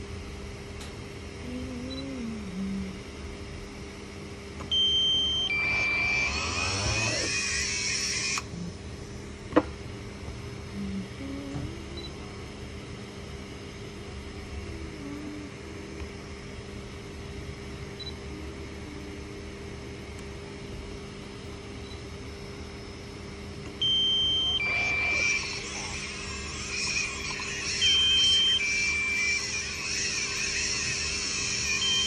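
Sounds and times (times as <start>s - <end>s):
low steady hum: 0.0s - 32.0s
noisy whir: 0.0s - 32.0s
loud electronic beeps: 4.8s - 8.4s, 23.8s - 32.0s.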